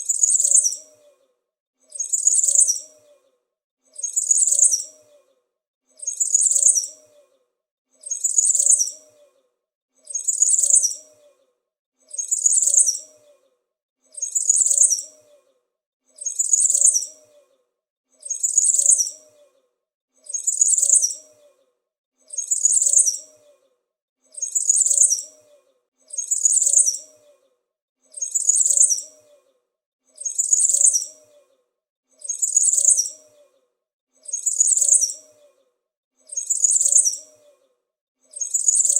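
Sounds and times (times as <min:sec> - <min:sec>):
small bird chirping: 0:00.0 - 0:01.2, 0:01.9 - 0:03.3, 0:04.0 - 0:05.3, 0:06.0 - 0:07.4, 0:08.0 - 0:09.4, 0:10.0 - 0:11.5, 0:12.1 - 0:13.5, 0:14.1 - 0:15.5, 0:16.1 - 0:17.6, 0:18.2 - 0:19.6, 0:20.2 - 0:23.7, 0:24.3 - 0:31.6, 0:32.2 - 0:33.6, 0:34.2 - 0:37.7, 0:38.3 - 0:38.9.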